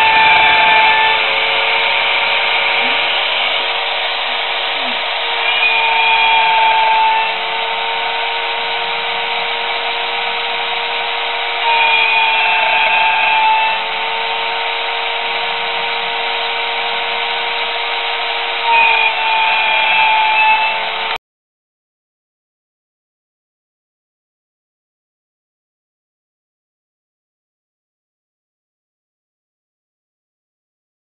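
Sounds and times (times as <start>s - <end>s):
cnc router motor whine: 0.0s - 21.2s.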